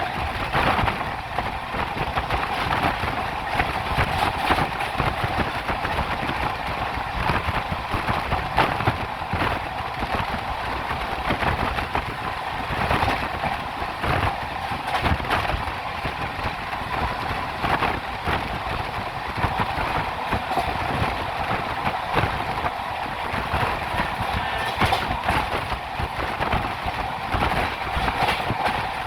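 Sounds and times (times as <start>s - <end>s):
train wheels rumbling on track: 0.0s - 29.0s
sharp clacks from rails: 6.9s - 29.0s.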